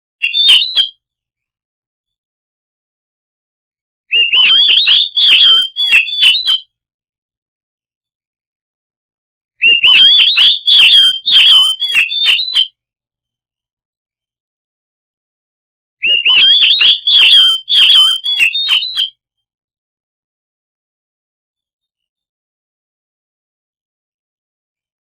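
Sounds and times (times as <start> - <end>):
bird singing whistles: 0.2 - 1.0, 4.1 - 6.7, 9.6 - 12.8, 16.0 - 19.2.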